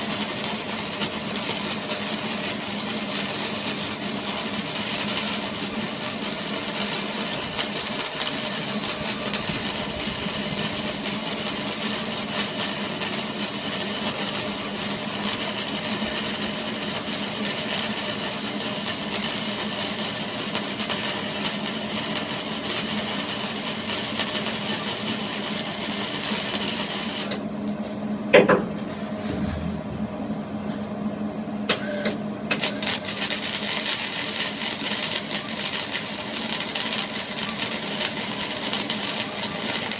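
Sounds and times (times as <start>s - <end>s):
machine humming: 24.8s - 39.9s
sharp knock: 28.4s - 28.8s.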